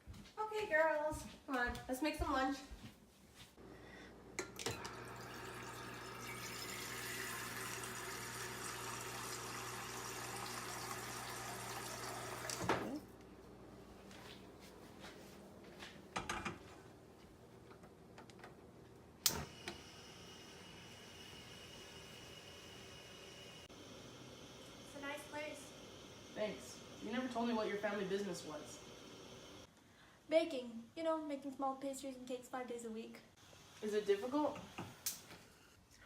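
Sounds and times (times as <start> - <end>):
water running from a tap: 4.9 - 12.7.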